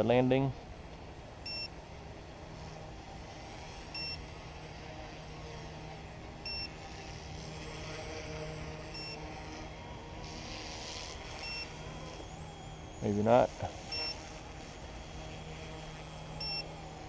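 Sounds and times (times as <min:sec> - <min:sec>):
helicopter motor and rotors humming: 0:00.0 - 0:17.0
short high beeps: 0:01.4 - 0:01.7, 0:03.9 - 0:04.2, 0:06.4 - 0:06.7, 0:08.9 - 0:09.2, 0:11.2 - 0:13.2, 0:13.8 - 0:14.4, 0:16.2 - 0:16.8.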